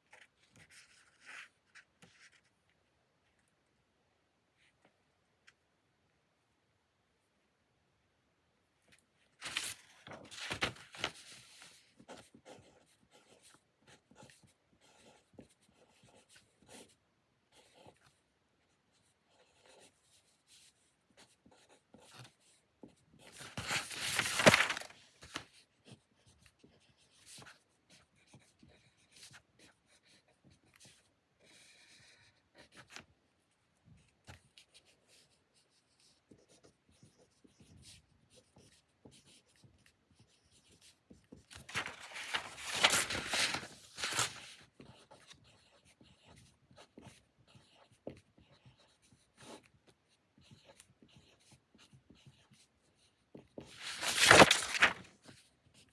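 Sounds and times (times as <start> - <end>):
pencil scratching on paper: 11.4 - 18.1, 18.9 - 23.3, 25.8 - 33.0, 34.6 - 41.3, 44.8 - 49.7.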